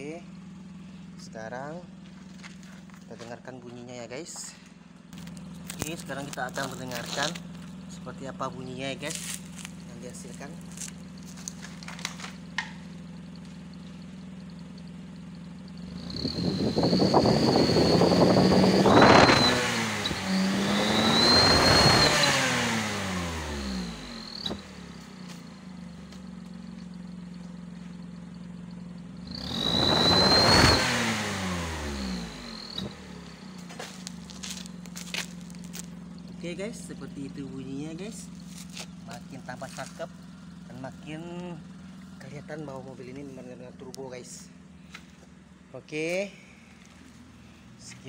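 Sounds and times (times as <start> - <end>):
car engine idling and revving: 0.0 - 48.0
turbo whistle: 15.9 - 24.7, 29.2 - 33.4.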